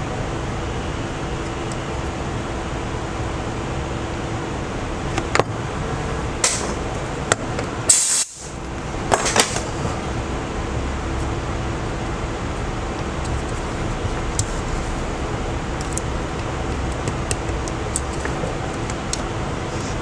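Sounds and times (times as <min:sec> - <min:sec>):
steady room hum and hiss: 0:00.0 - 0:20.0
short hissing burst: 0:07.9 - 0:08.5.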